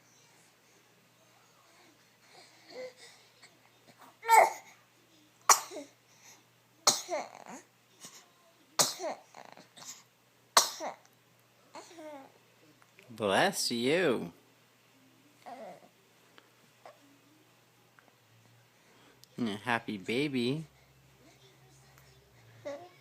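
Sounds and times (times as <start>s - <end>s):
baby babbling and whimpering: 1.2s - 4.8s, 7.1s - 8.3s, 9.0s - 10.0s, 11.7s - 12.4s, 15.4s - 15.9s, 21.2s - 23.0s
baby sneezing: 4.2s - 4.7s, 5.5s - 6.0s, 6.8s - 7.7s, 8.8s - 10.0s, 10.6s - 11.0s.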